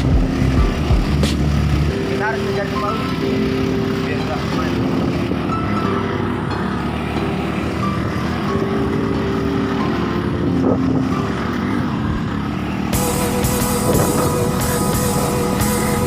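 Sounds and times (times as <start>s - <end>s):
rock music: 0.0s - 10.2s, 12.8s - 16.0s
motor scooter engine running: 0.0s - 16.0s.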